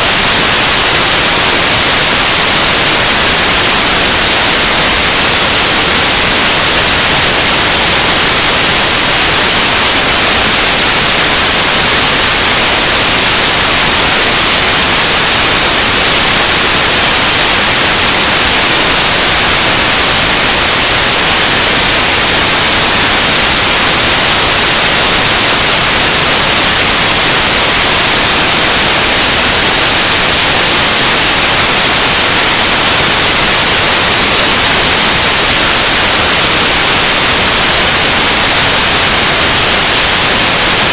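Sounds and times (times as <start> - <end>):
loud wall of hiss: 0.0 - 40.9.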